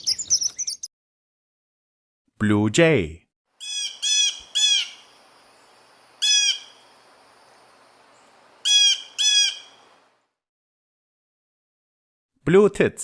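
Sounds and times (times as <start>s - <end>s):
blue jay calling: 0.0s - 0.9s, 3.6s - 10.1s.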